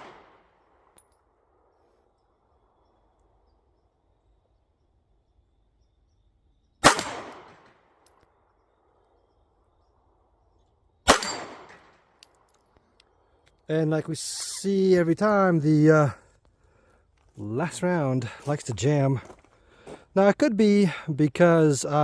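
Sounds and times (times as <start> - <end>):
pistol shots with echo: 6.8 - 8.0, 11.0 - 12.1.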